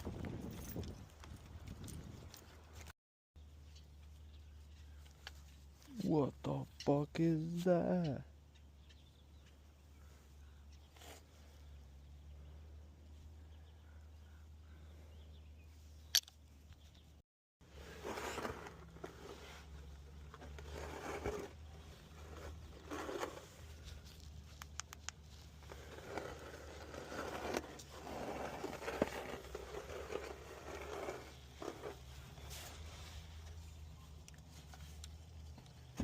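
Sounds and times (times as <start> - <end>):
scraping and rustling handling: 17.7 - 36.0.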